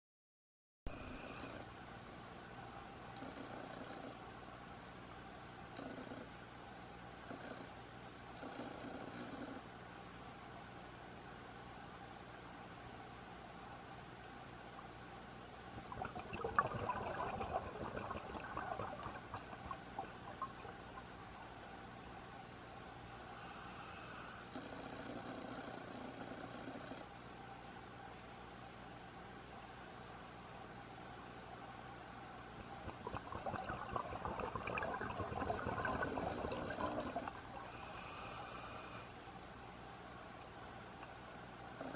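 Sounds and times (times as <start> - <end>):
faint steady hiss: 0.9 - 41.9
underwater bubbles: 15.8 - 21.7, 32.6 - 38.0.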